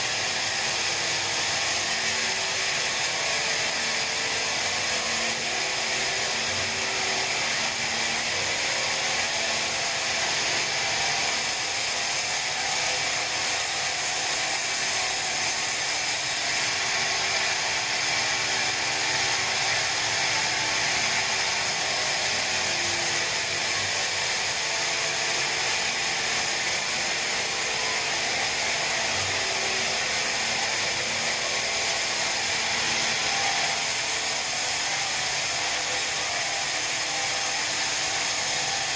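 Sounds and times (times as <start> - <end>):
band saw cutting a log: 0.0 - 38.9.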